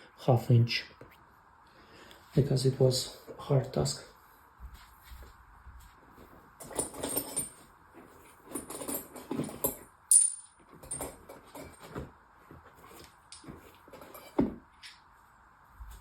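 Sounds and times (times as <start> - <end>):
metal tools clinking: 6.6 - 7.6, 8.2 - 12.0.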